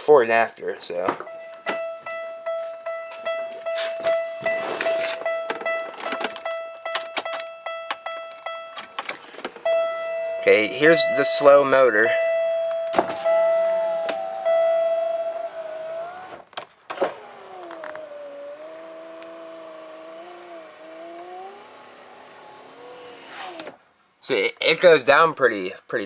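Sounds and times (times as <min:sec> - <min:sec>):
steady chime tone: 0:01.3 - 0:09.0, 0:09.6 - 0:15.6
power window motor whine: 0:12.9 - 0:23.8.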